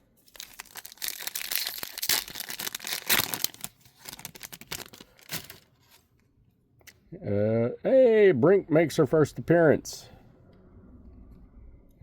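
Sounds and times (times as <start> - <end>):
wrapper crinkling and tearing: 0.2 - 6.0
cards crackling and clicking: 0.4 - 6.0.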